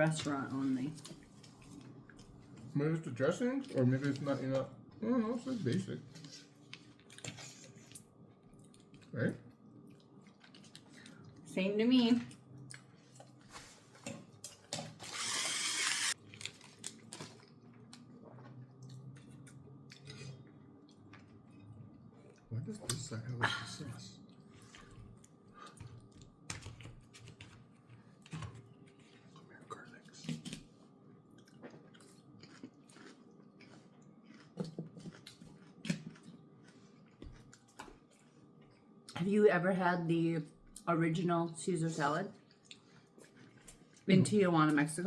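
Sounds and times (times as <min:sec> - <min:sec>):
chewing food: 0:00.9 - 0:02.8, 0:06.1 - 0:11.5, 0:12.2 - 0:14.8, 0:16.2 - 0:22.5, 0:24.2 - 0:39.3, 0:42.4 - 0:44.8
chewing and biting food: 0:30.4 - 0:39.2, 0:42.4 - 0:44.1.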